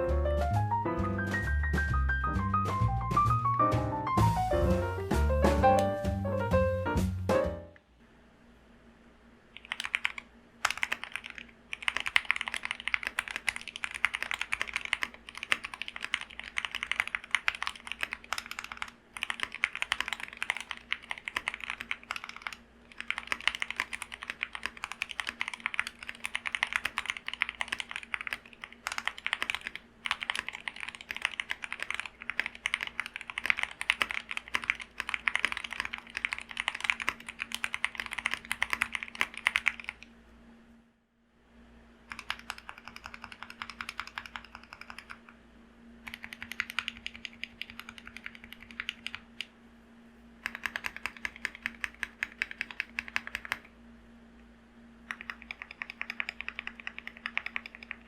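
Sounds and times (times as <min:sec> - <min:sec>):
fast typing on mechanical keyboard: 0:09.6 - 0:40.1, 0:42.1 - 0:45.4, 0:46.0 - 0:49.5, 0:50.4 - 0:53.7, 0:55.1 - 0:58.0.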